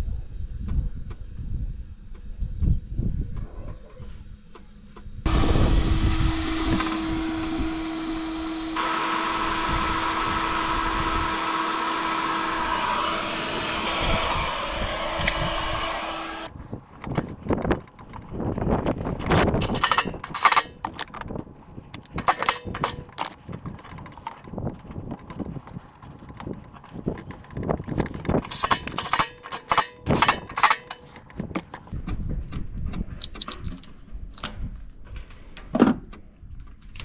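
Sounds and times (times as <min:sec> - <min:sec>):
knocks and metallic clanks of tools: 0:16.6 - 0:31.9.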